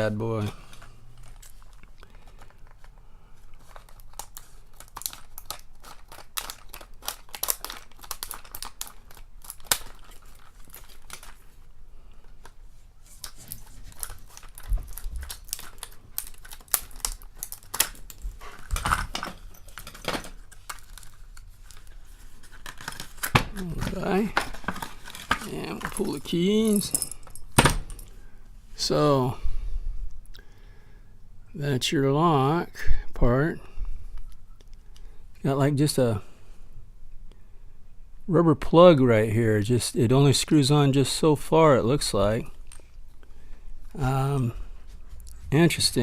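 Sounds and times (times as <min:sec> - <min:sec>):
packaging crinkling and tearing: 0:00.7 - 0:26.8.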